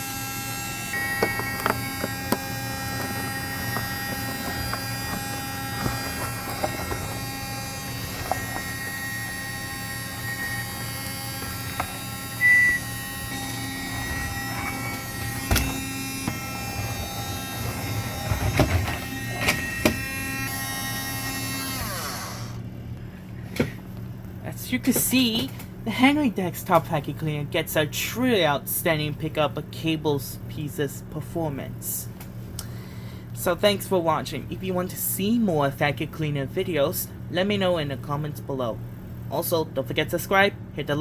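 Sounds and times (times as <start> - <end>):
mini vacuum motor whining: 0.0 - 22.7.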